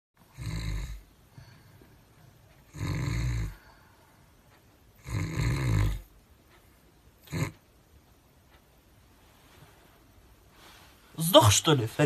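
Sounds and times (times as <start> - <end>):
man snoring: 0.2 - 1.1, 2.7 - 3.7, 5.0 - 6.1, 7.2 - 7.6.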